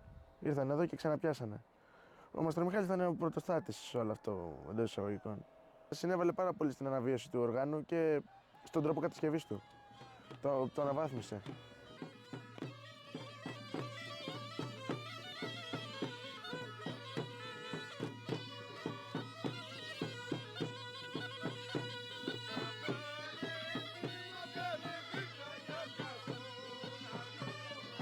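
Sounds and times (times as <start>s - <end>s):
bagpipe folk melody: 10.2s - 28.0s.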